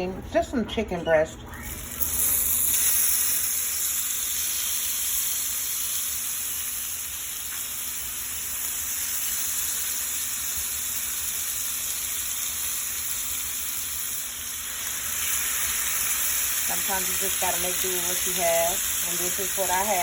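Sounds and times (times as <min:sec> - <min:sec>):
chicken sizzling in a pan: 0:01.6 - 0:20.0.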